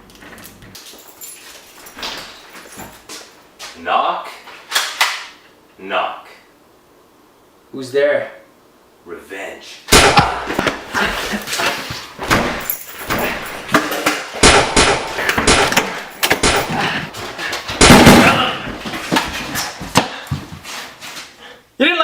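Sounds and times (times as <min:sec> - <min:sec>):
toy blaster shots and impacts: 0:09.9 - 0:10.5, 0:14.4 - 0:16.7.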